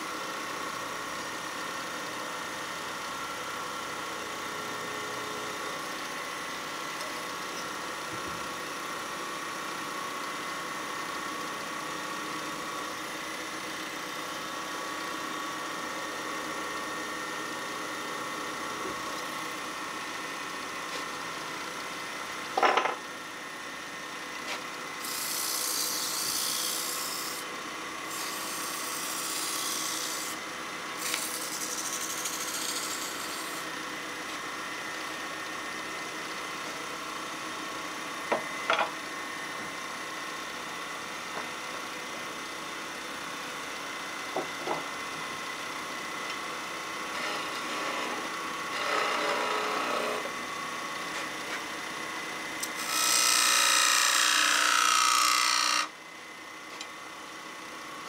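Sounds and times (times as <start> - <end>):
tool hissing on spinning wood: 24.4 - 34.4
wood lathe humming: 24.4 - 35.3, 47.0 - 50.5, 52.5 - 56.0.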